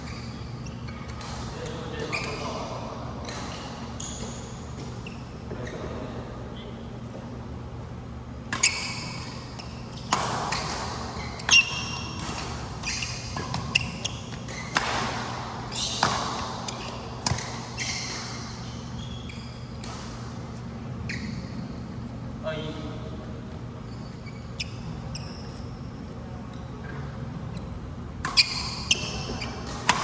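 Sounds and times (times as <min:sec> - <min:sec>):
shoes squeaking on court: 0:00.0 - 0:06.2, 0:07.0 - 0:30.0
racket hitting shuttlecock: 0:08.5 - 0:18.8.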